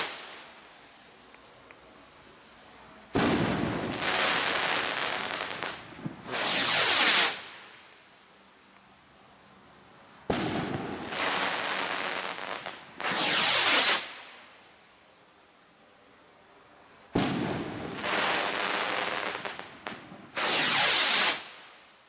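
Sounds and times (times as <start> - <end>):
firework rocket launch whoosh: 0.0 - 0.5, 5.4 - 7.7, 13.0 - 14.3, 20.3 - 21.7
firework burst crackling: 0.0 - 1.6, 3.0 - 8.3, 10.2 - 14.5, 17.2 - 22.0.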